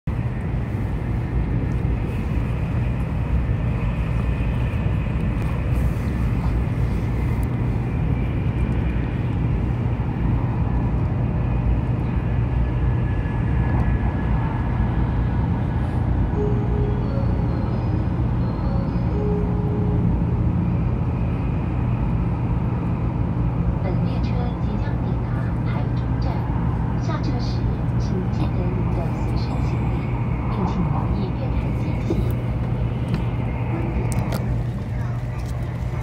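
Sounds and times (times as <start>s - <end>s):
train running noise drone: 0.1s - 36.0s.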